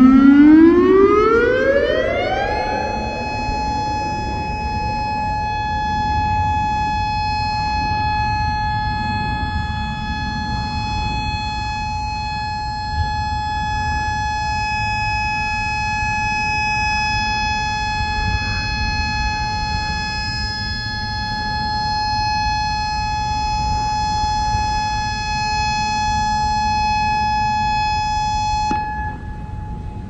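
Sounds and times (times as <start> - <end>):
low rumbling noise: 0.0 - 11.0, 28.7 - 30.0
steady high-pitched warning siren: 0.0 - 30.0.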